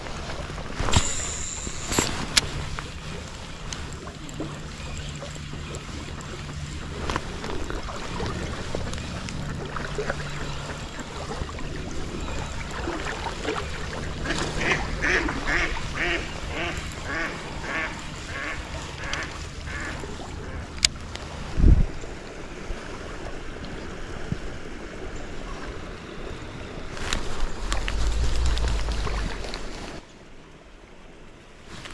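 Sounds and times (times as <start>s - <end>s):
stream water rushing: 0.0s - 31.9s
sharp click: 0.9s - 2.5s
duck quacking: 14.2s - 19.9s.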